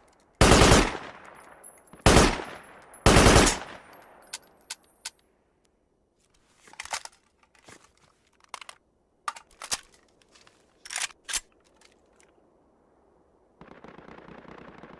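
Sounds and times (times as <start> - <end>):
rifle metallic clicks: 8.3 - 12.4.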